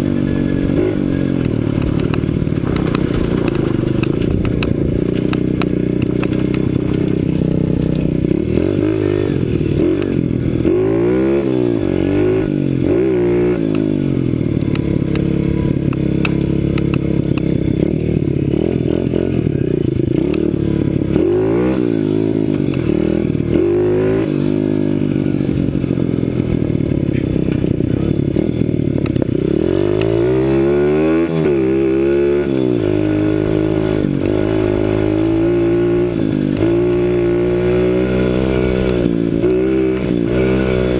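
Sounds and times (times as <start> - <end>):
motorcycle engine revving: 0.0 - 40.9.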